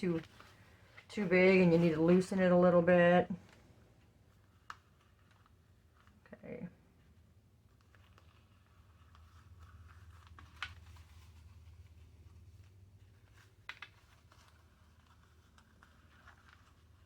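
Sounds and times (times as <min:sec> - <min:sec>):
low steady hum: 0:00.0 - 0:17.0
paper rustling: 0:03.1 - 0:06.2, 0:07.1 - 0:17.0.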